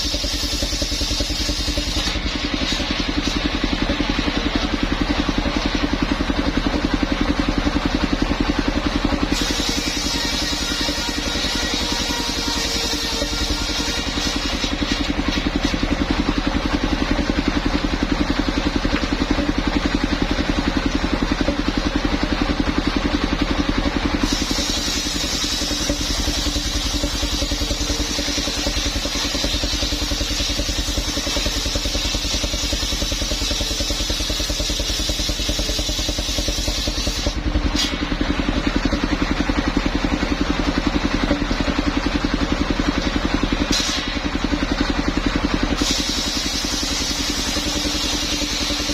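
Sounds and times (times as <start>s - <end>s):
saw blade cutting wood: 0.0s - 5.8s, 8.9s - 22.1s, 24.2s - 38.1s, 43.6s - 44.2s, 45.8s - 48.9s
sawmill engine running: 0.0s - 48.9s.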